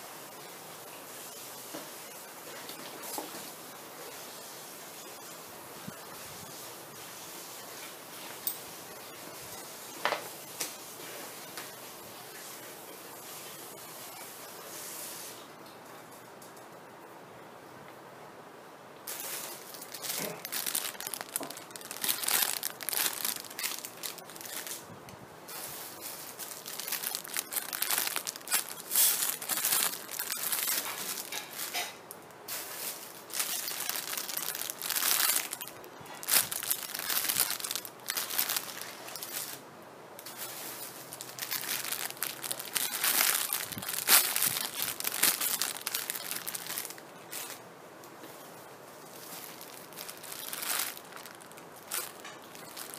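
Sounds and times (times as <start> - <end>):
plastic packaging crinkling: 19.1 - 24.9, 25.5 - 39.6, 40.2 - 47.6, 48.4 - 52.9.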